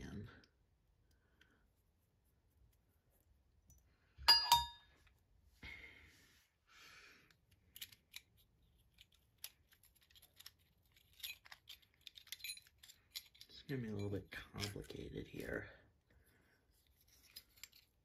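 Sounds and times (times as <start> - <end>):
sharp ringing clinks: 4.3 - 4.8.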